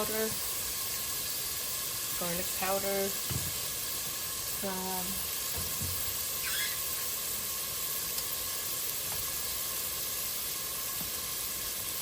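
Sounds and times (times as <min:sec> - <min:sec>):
onions sizzling in pan: 0:00.0 - 0:12.0
faint squeak: 0:06.4 - 0:06.9.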